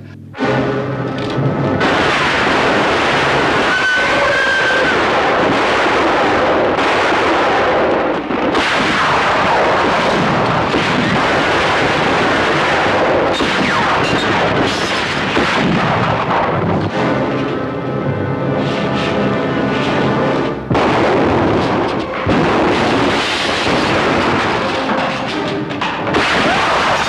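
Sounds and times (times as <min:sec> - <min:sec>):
music: 0:00.0 - 0:05.2, 0:16.6 - 0:27.0
falling whines: 0:00.4 - 0:05.2
heavy gunfire barrage: 0:00.4 - 0:27.0.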